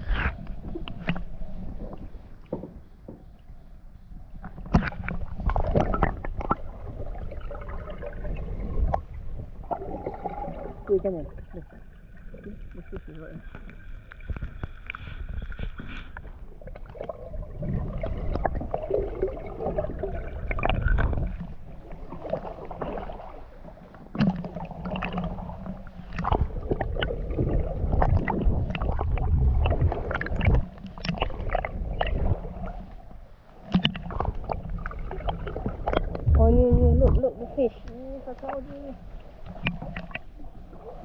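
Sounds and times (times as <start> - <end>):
water sloshing around kayak: 0.0 - 41.0
low rumble: 35.6 - 39.0.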